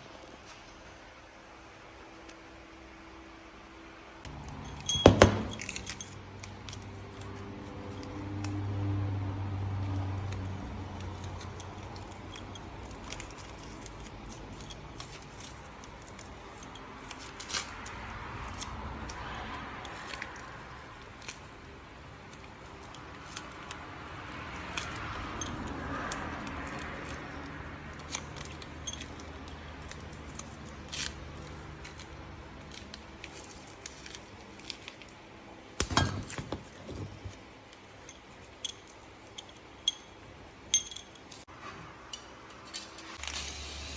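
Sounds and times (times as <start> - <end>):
metal tools clinking: 4.3 - 8.6, 9.8 - 19.2, 19.9 - 34.9, 35.8 - 41.5.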